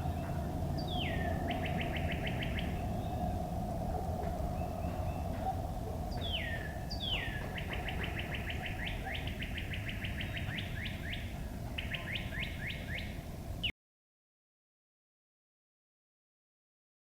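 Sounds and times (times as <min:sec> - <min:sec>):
low outdoor hiss: 0:00.0 - 0:13.7
bird whistling and chirping: 0:06.1 - 0:13.2.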